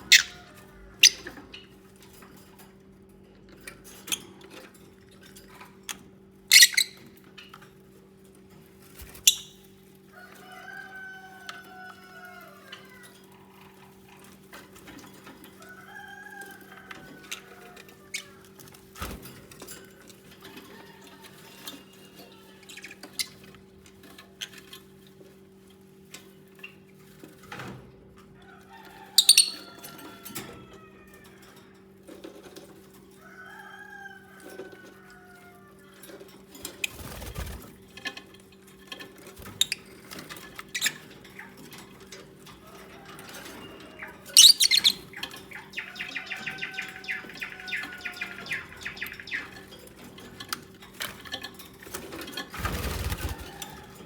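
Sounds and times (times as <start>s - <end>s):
bird squawk: 0.0s - 1.3s, 6.5s - 7.0s, 29.2s - 29.7s, 44.0s - 49.6s
lovebirds chirping: 0.0s - 1.3s, 6.5s - 7.0s, 29.2s - 29.7s, 43.7s - 49.8s.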